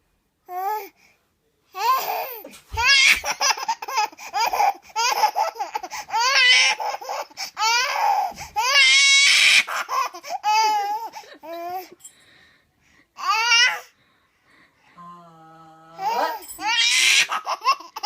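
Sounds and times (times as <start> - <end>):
baby laughing: 1.9 - 12.0, 16.0 - 18.0.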